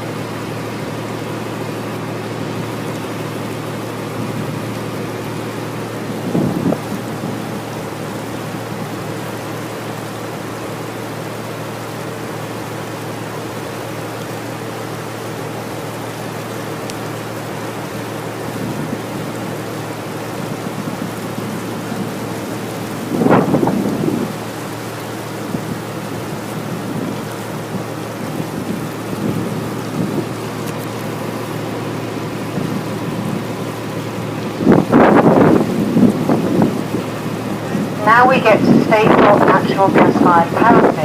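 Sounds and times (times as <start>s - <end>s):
boat engine drone: 0.0s - 41.0s
low rumble: 34.4s - 41.0s.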